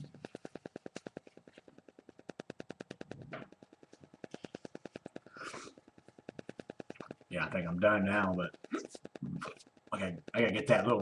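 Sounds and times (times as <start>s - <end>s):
breathy noise: 0.0s - 7.4s
rapid clicking: 0.0s - 11.0s.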